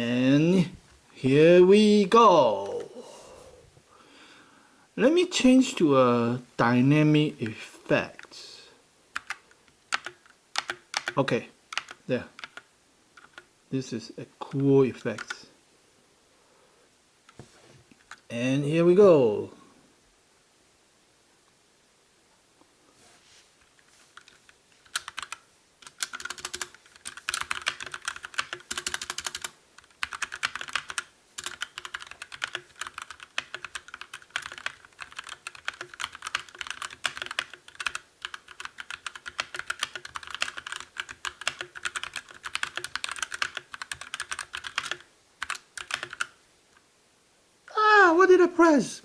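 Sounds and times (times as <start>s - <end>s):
mechanical keyboard typing: 9.2s - 13.5s, 14.6s - 15.4s, 24.2s - 46.4s.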